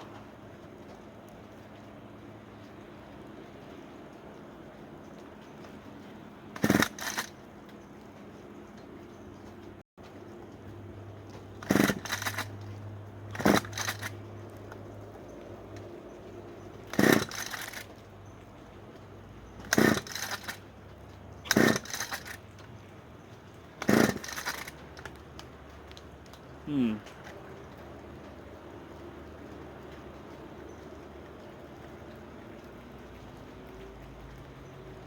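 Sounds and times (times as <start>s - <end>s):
pull-start rope yanked: 6.5s - 7.4s, 11.3s - 14.2s, 16.9s - 18.0s, 19.6s - 20.6s, 21.4s - 22.6s, 23.8s - 25.2s.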